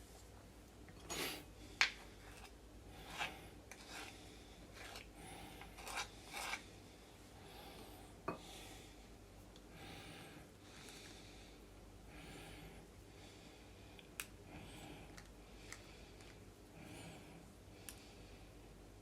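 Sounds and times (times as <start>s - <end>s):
utensil scraping batter from bowl: 2.2s - 6.7s.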